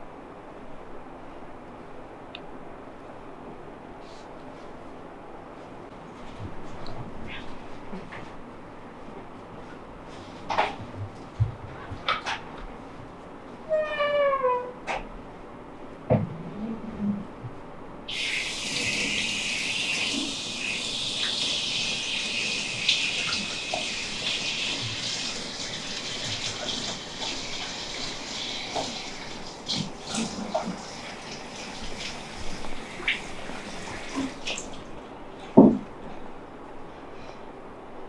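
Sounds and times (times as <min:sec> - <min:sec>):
water running from tap: 0:18.1 - 0:35.0.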